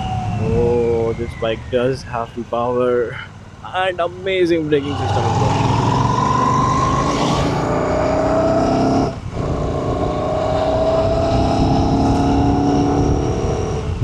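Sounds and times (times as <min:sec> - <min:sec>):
motorcycle engine accelerating: 0:04.8 - 0:14.0.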